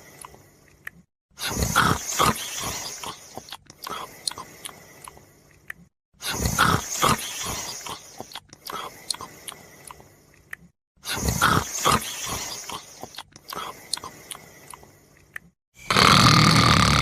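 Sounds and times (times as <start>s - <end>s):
loud rasping snores: 1.4s - 3.4s, 6.2s - 8.1s, 11.1s - 13.0s, 15.8s - 17.0s.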